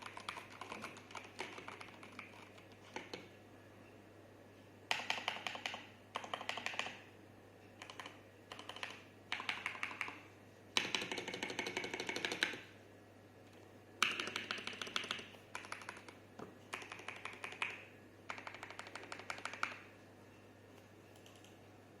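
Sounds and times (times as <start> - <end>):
mechanical keyboard typing: 0.0 - 3.3, 4.9 - 7.0, 7.8 - 10.2, 10.8 - 12.6, 14.0 - 19.9.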